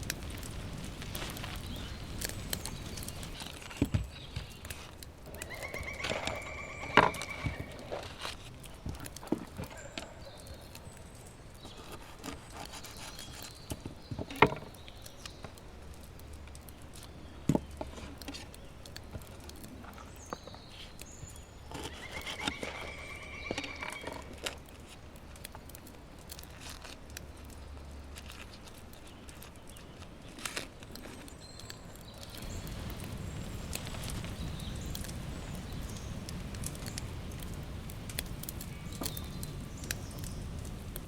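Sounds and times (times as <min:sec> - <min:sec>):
birds chirping: 0:00.0 - 0:15.6, 0:31.2 - 0:41.0.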